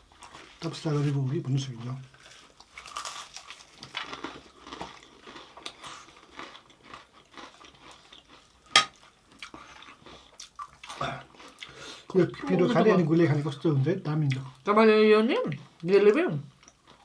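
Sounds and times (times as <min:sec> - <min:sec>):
crunching crisp fried food: 0:00.0 - 0:12.2.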